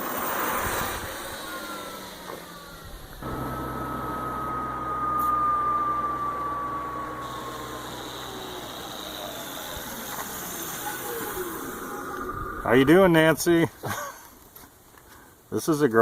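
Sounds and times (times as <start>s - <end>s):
road and wind noise: 0.0s - 4.1s, 7.2s - 13.6s
electric motor whine falling: 0.0s - 13.4s
steady low hum: 0.6s - 14.4s.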